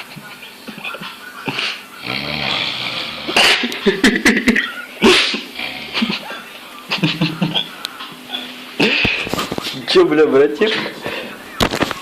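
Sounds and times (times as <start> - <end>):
man snoring: 2.0 - 3.6, 5.4 - 6.3.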